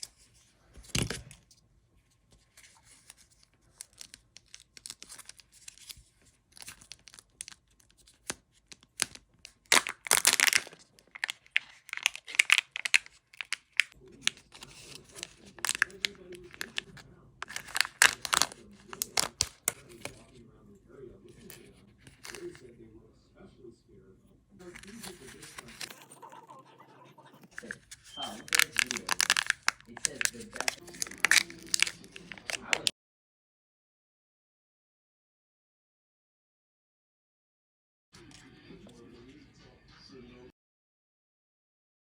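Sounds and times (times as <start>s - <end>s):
foil wrapper crinkling and tearing: 2.5s - 20.2s, 24.6s - 26.0s, 27.5s - 32.9s.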